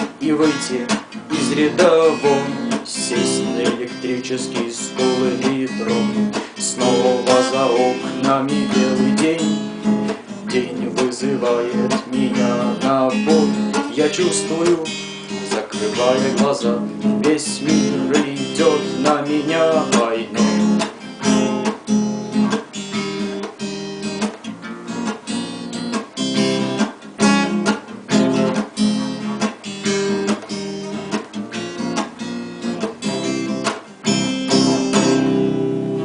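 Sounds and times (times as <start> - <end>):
acoustic guitar strumming: 0.0 - 36.0.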